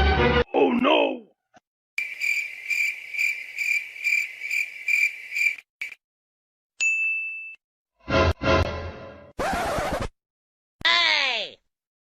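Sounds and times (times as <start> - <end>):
crickets chirping: 2.0 - 6.0
bright bell ding: 6.8 - 7.6.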